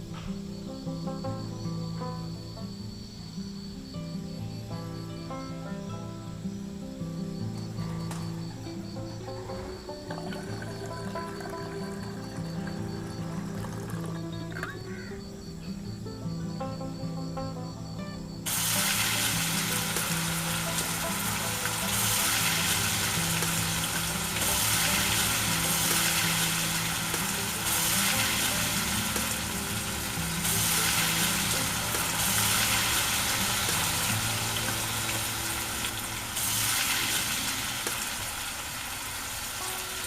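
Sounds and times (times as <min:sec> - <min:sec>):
dough sizzling in hot oil: 0:09.0 - 0:14.3, 0:18.4 - 0:40.0.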